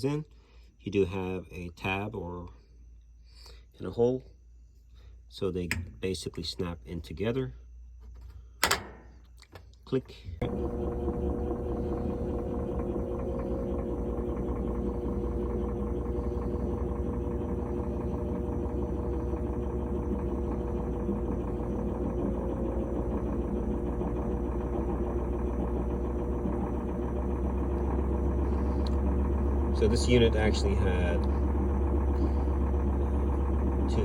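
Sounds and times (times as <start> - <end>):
washing machine motor hum: 10.4 - 34.0.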